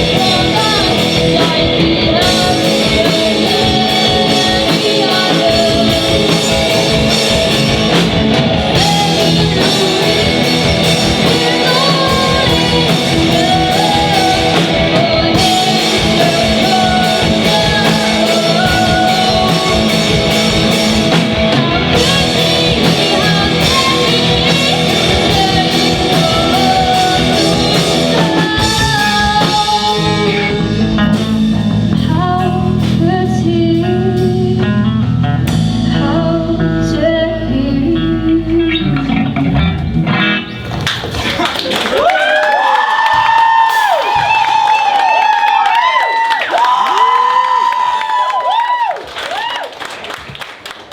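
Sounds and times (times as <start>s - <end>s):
singer singing: 0.0s - 40.0s
electric guitar: 0.0s - 49.4s
drum kit: 0.0s - 49.6s.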